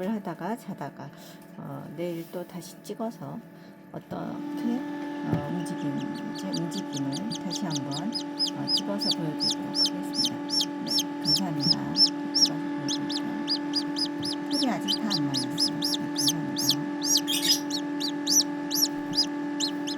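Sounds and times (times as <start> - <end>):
steady low hum: 3.4 - 19.9
chicks peeping: 5.3 - 19.9.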